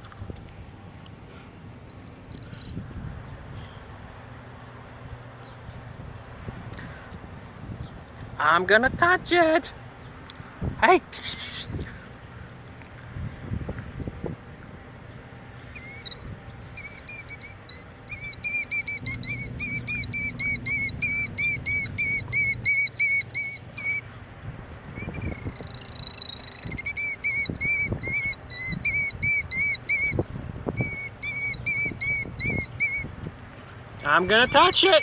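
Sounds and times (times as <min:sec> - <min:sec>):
bird alarm calls: 0:15.7 - 0:16.2, 0:16.8 - 0:24.2, 0:25.0 - 0:30.2, 0:30.8 - 0:33.2, 0:34.0 - 0:35.0
drawn-out bird call: 0:15.7 - 0:16.2, 0:16.8 - 0:24.2, 0:25.0 - 0:33.2, 0:34.0 - 0:35.0.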